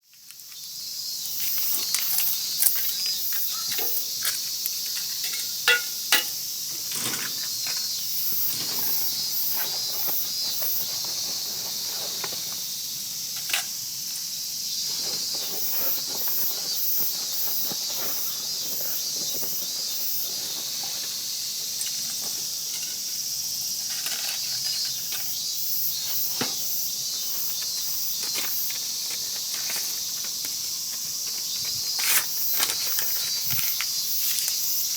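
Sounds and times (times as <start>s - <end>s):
insects chirping: 0.0s - 34.9s.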